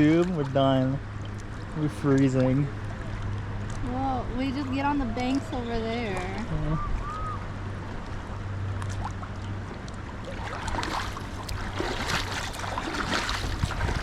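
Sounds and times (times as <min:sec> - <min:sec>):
small splashes: 0:08.0 - 0:14.0
river water rushing: 0:09.2 - 0:14.0.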